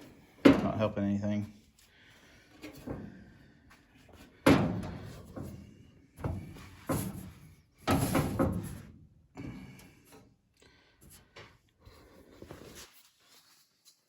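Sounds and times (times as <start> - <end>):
sheet-metal panels clanking: 6.2 - 8.9.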